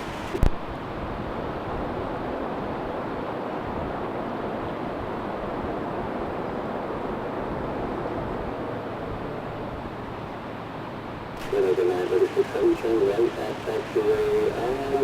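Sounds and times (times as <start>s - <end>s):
wind: 0.0s - 15.0s
jet engines roaring: 11.4s - 15.0s.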